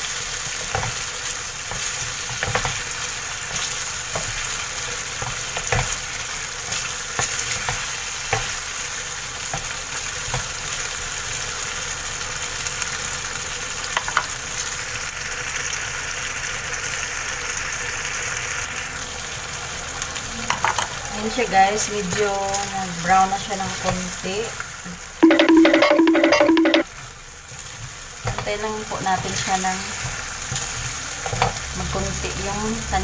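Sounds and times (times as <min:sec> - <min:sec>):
fish sizzling in a pan: 0:00.0 - 0:25.2, 0:26.9 - 0:33.0.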